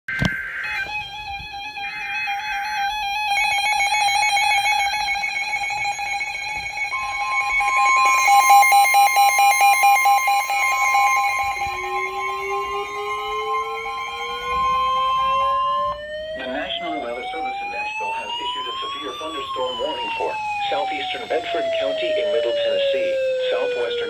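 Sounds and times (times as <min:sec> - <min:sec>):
higher steady warning tone: 0:00.1 - 0:24.0
rapid electronic alarm beeps: 0:01.9 - 0:24.0
digital header data screech: 0:03.3 - 0:24.0
steady alert tone: 0:06.8 - 0:24.0.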